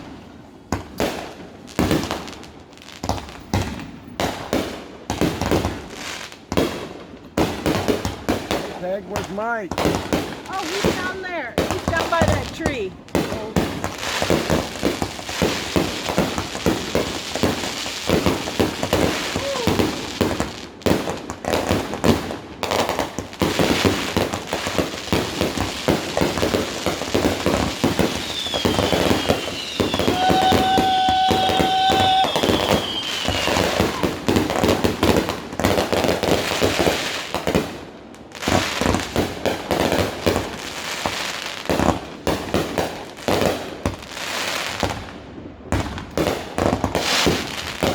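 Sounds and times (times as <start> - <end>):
fireworks banging and crackling: 0.0 - 47.9
high descending whistles: 28.2 - 34.0.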